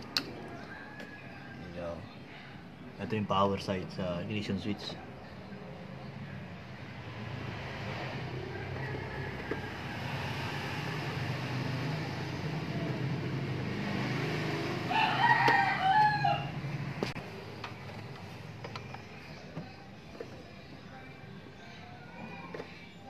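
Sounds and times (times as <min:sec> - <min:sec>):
rooster crowing: 0:00.4 - 0:01.8, 0:08.3 - 0:12.2, 0:14.6 - 0:16.6.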